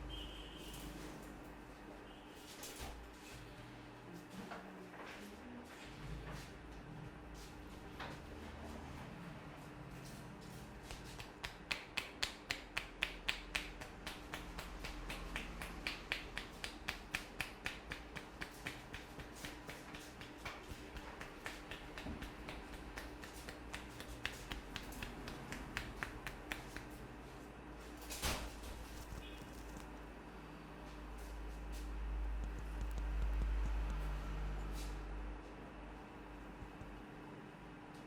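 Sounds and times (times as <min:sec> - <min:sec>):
hands slapping on head: 0:10.8 - 0:27.0.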